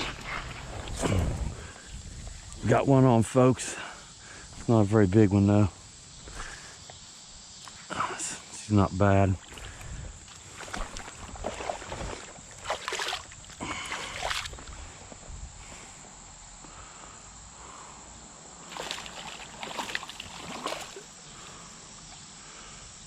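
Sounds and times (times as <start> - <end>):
creek water splashing: 0.0 - 4.8, 9.2 - 15.1, 18.6 - 22.4
steady hiss: 0.0 - 10.9, 13.4 - 19.4.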